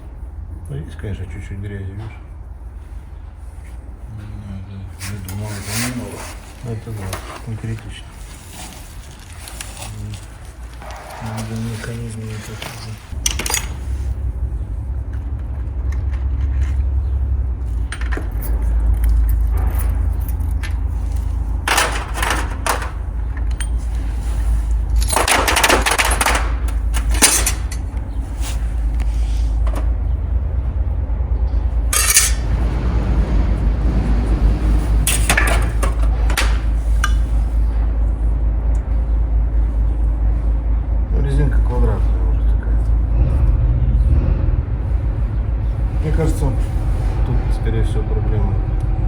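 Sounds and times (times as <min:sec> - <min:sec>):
steady low rumble: 0:00.0 - 0:05.5, 0:06.3 - 0:49.0
metal parts and tools clinking: 0:12.4 - 0:14.2, 0:17.7 - 0:28.2, 0:31.9 - 0:32.6, 0:35.0 - 0:37.4.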